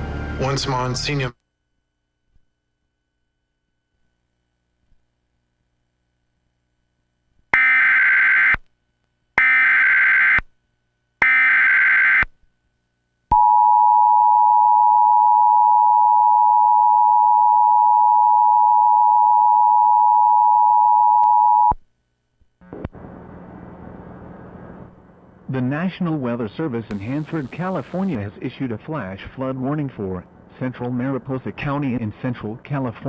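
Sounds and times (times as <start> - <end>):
warbling data tones: 26.9 - 28.2.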